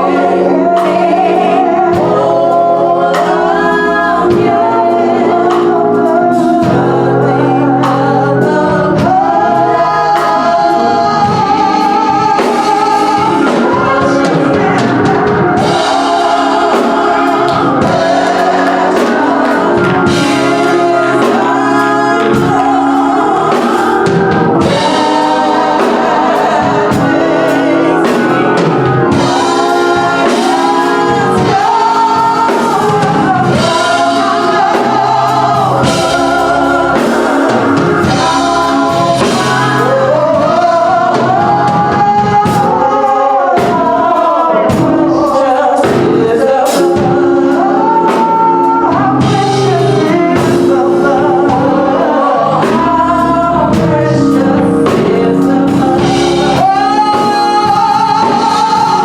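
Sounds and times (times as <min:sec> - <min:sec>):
choir singing gospel song: 0:00.0 - 0:59.0
instrumental backing with drums: 0:00.0 - 0:59.0.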